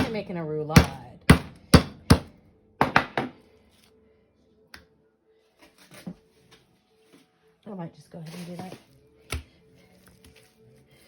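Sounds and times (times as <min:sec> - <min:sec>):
knocks on a cutting board: 0:02.8 - 0:03.3.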